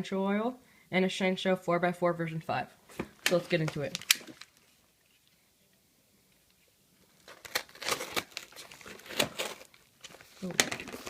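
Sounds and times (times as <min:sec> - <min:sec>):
packaging torn and crinkled: 0:07.2 - 0:11.0.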